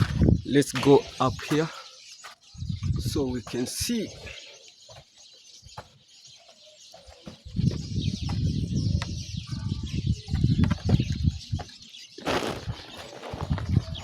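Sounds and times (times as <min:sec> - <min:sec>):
wind buffeting microphone: 0:00.0 - 0:01.5, 0:02.5 - 0:04.3, 0:07.3 - 0:14.0.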